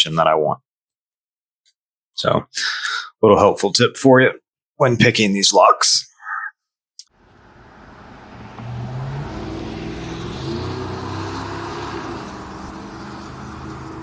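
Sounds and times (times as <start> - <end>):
motor vehicle driving past: 7.2 - 14.0.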